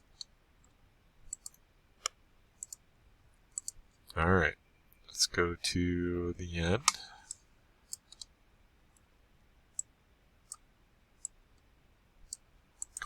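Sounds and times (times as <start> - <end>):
computer mouse clicking: 0.1 - 2.8, 3.5 - 3.8, 6.9 - 8.3, 12.3 - 13.0.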